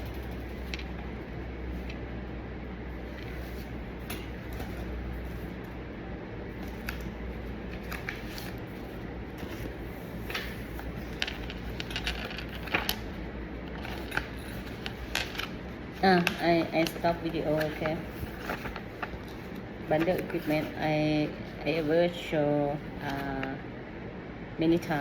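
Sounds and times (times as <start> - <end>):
room hum: 0.0 - 25.0.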